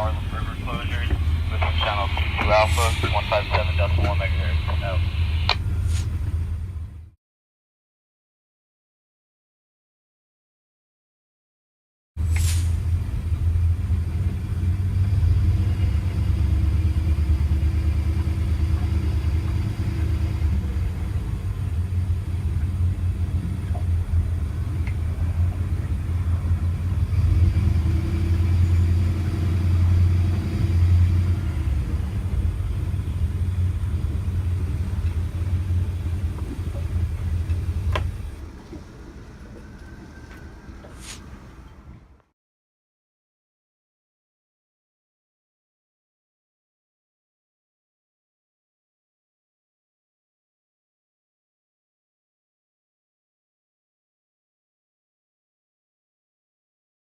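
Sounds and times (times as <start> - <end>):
boat engine low rumble: 0.0 - 7.2, 12.2 - 42.3.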